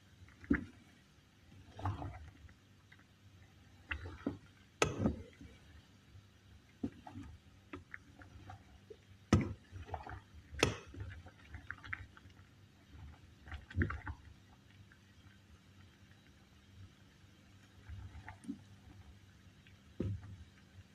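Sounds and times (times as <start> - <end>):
liquid sloshing: 0.2 - 5.8, 6.7 - 14.5.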